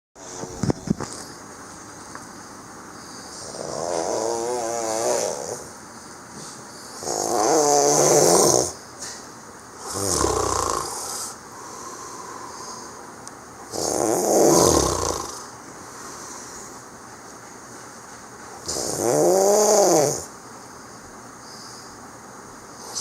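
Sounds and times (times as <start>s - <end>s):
man snoring loudly: 3.4s - 5.7s, 7.0s - 8.8s, 9.8s - 11.4s, 13.7s - 15.5s, 18.6s - 20.3s.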